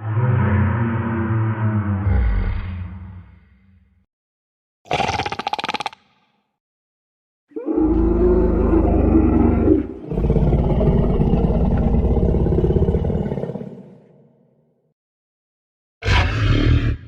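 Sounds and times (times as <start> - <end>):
deep dinosaur roar: 0.0 - 3.4, 7.5 - 14.2, 16.0 - 17.0.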